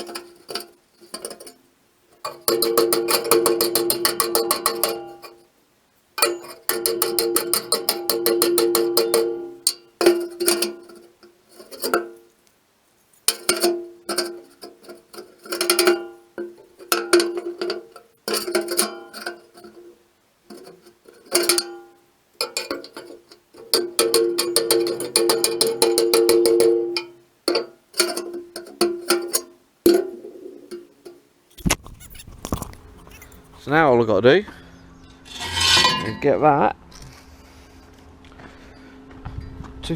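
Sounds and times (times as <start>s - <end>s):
rapid plucked string music: 23.7s - 27.6s.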